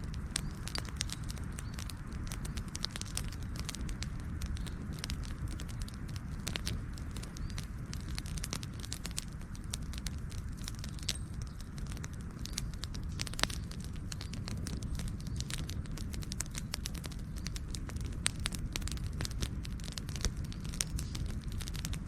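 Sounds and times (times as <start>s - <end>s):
campfire crackling and popping: 0.0s - 22.0s
low rumble of flames: 0.0s - 22.0s.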